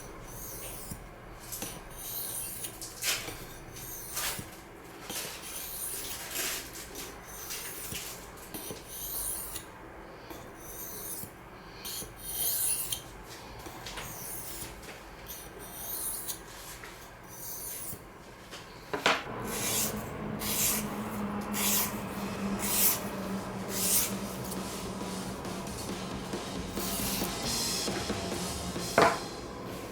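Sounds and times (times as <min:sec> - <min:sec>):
knife scraping on sharpening stone: 0:00.2 - 0:01.0, 0:01.6 - 0:04.4, 0:10.6 - 0:11.3, 0:11.9 - 0:13.1, 0:15.3 - 0:16.4, 0:17.3 - 0:18.0
low steady hum: 0:19.3 - 0:29.9.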